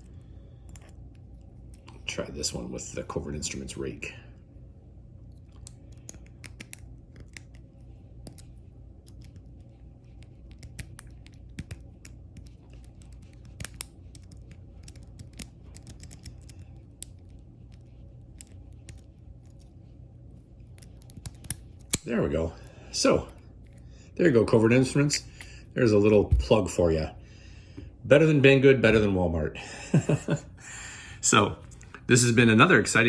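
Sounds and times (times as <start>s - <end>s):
lock pick scraping and clicking: 5.5s - 7.6s, 20.7s - 22.1s.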